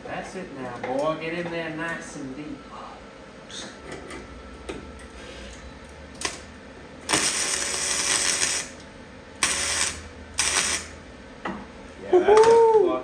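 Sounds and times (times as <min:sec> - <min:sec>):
electric welder crackling: 0:06.2 - 0:11.0.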